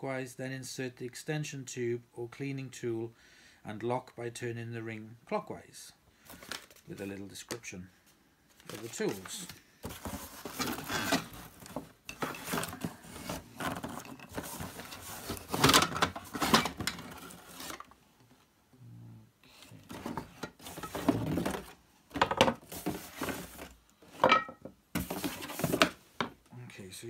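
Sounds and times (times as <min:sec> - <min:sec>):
plastic tools rustling and clattering: 0:08.5 - 0:18.0, 0:19.7 - 0:26.4.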